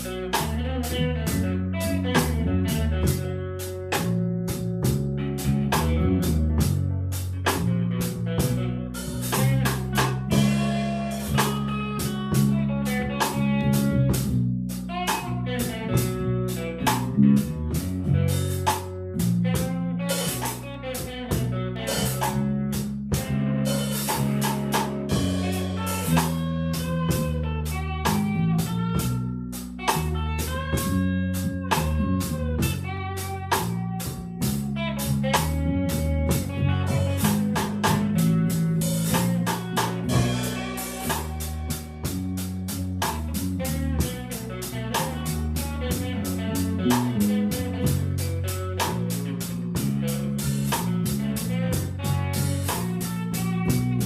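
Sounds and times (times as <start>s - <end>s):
bass guitar: 0.0s - 54.0s
drum kit: 0.0s - 54.0s
electric lead guitar: 0.0s - 54.0s.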